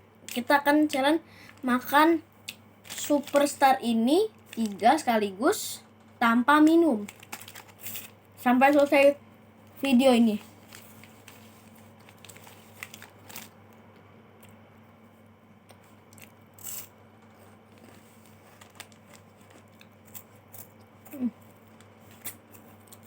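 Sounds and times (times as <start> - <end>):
chocolate wafer crunching: 0.3 - 3.7, 6.9 - 9.0, 10.3 - 13.6, 15.7 - 23.0.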